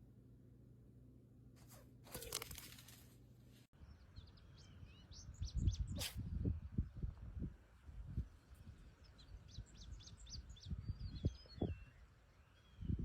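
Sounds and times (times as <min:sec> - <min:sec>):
rustling crinkling noise: 0:01.6 - 0:03.7
small birds chirping: 0:03.8 - 0:13.0.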